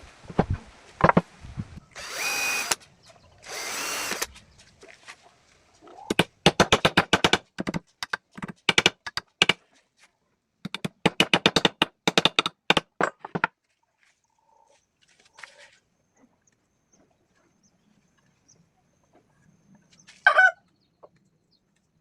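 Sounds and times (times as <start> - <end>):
rapid sharp knocks: 6.1 - 9.6, 10.7 - 13.5.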